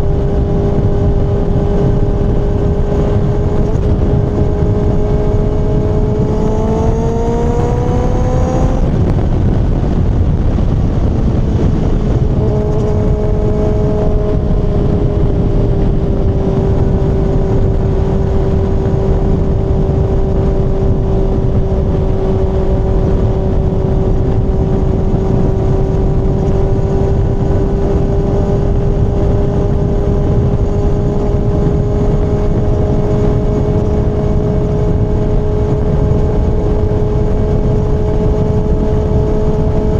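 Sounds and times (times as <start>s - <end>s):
motorcycle engine revving: 0.0s - 39.9s
wind rumble: 0.0s - 39.9s.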